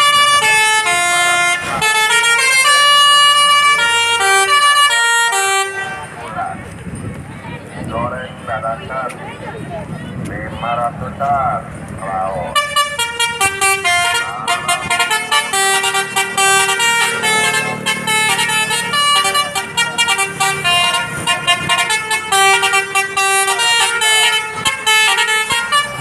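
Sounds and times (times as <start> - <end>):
bus multi-tone horn melody: 0.0 - 6.6, 12.5 - 26.0.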